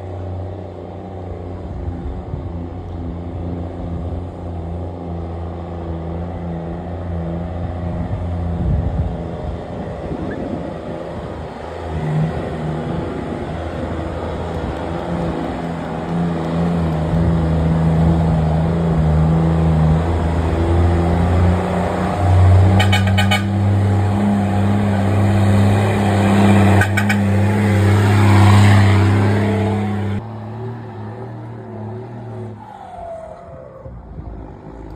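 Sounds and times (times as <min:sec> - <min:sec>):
truck diesel engine running: 0:09.7 - 0:30.2.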